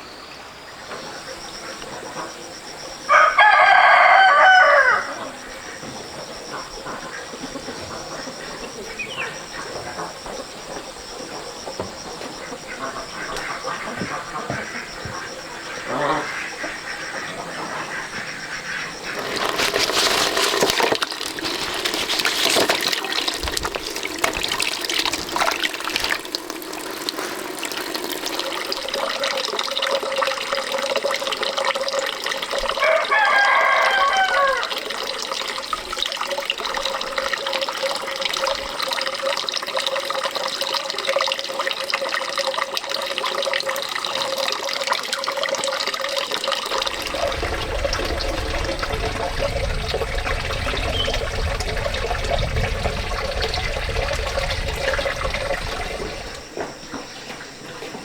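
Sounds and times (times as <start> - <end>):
rooster crowing: 3.1 - 5.4, 32.7 - 35.0
running splashing water: 12.6 - 58.0.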